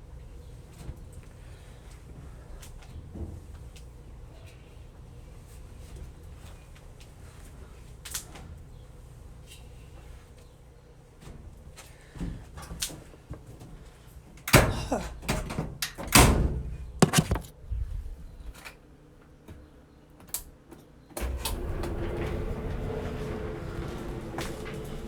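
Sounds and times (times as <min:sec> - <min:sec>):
door clunks and bangs: 0:16.1 - 0:17.5.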